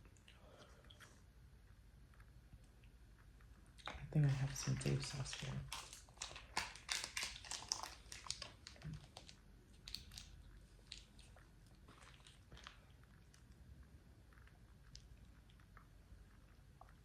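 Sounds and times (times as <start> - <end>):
crunchy chewing of fried chicken: 5.4 - 17.0.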